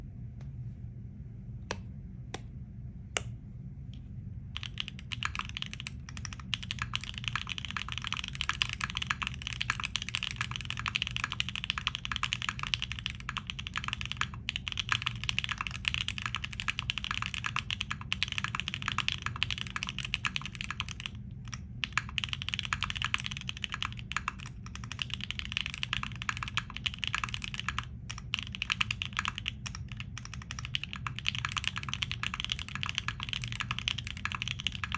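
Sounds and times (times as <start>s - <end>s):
mechanical keyboard typing: 4.6s - 34.9s.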